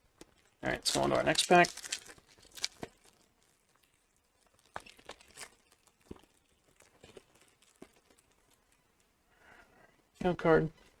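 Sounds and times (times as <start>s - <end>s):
foil wrapper tearing open: 0.3s - 8.6s.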